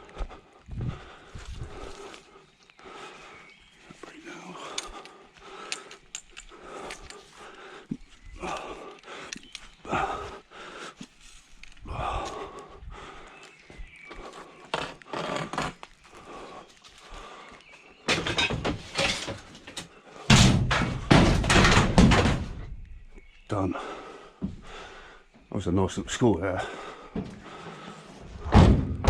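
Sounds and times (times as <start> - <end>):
scrap thudding and rattling: 18.1 - 22.9, 27.1 - 29.0
heavy banging: 20.3 - 22.8.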